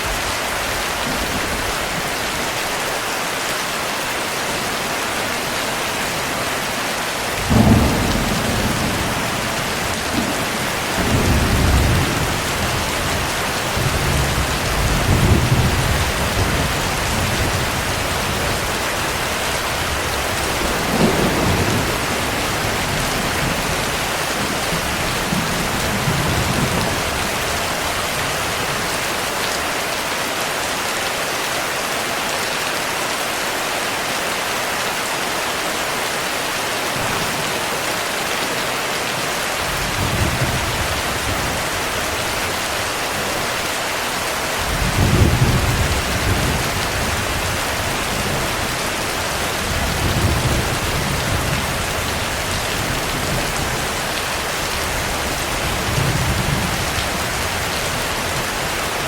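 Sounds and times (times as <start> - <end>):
heavy rain: 0.0 - 59.0
thunder rumbling: 7.2 - 28.9, 39.6 - 58.5.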